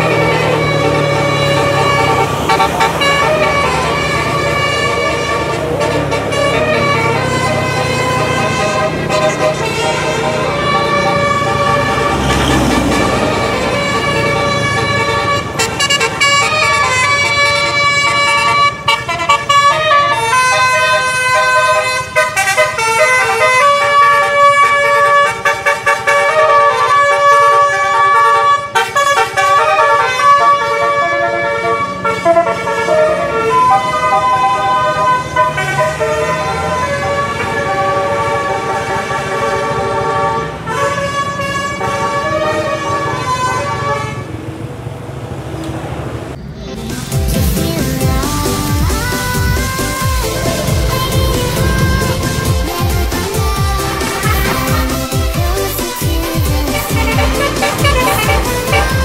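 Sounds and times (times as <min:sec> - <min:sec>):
bus musical air horn melody: 0:00.0 - 0:44.6, 0:47.3 - 0:59.0.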